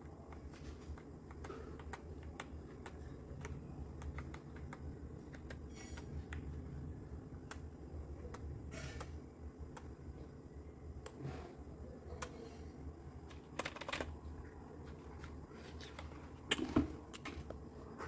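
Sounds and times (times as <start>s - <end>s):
steady low hum: 0.0s - 18.0s
mechanical keyboard keystrokes: 13.5s - 14.1s.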